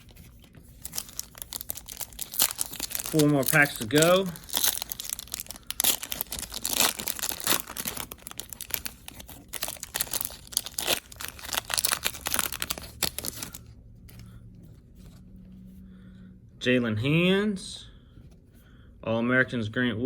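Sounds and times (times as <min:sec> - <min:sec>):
wrapper tearing and crinkling: 0:00.0 - 0:13.7.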